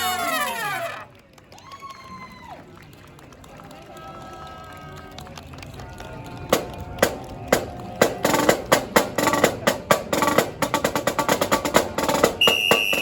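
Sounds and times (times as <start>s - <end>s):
marching band drums: 6.5s - 13.0s.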